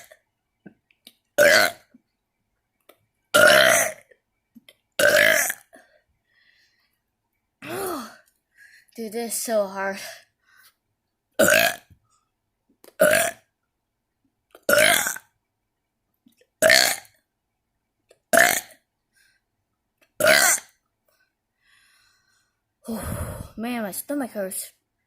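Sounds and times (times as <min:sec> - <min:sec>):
person burping: 0:01.4 - 0:01.9, 0:03.3 - 0:04.1, 0:05.0 - 0:05.9, 0:07.6 - 0:08.2, 0:11.4 - 0:11.9, 0:13.0 - 0:13.5, 0:14.6 - 0:15.3, 0:16.6 - 0:17.2, 0:18.3 - 0:18.8, 0:20.2 - 0:20.8.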